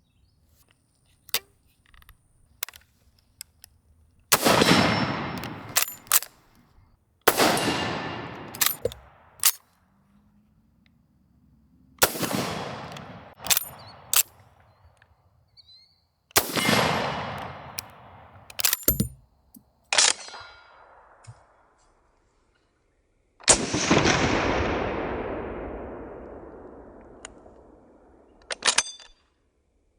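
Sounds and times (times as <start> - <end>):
rifle bolt clacking: 1.3 - 2.9, 5.3 - 6.5, 7.3 - 9.6, 12.8 - 14.3, 16.4 - 19.2
rifle shots with rolling echo: 4.3 - 6.4, 7.3 - 9.6, 12.0 - 14.8, 16.4 - 19.2, 23.5 - 28.8.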